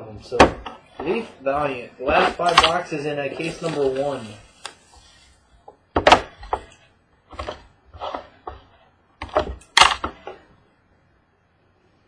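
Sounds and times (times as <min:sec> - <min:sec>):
packaging rustling and knocking: 0:02.1 - 0:04.4.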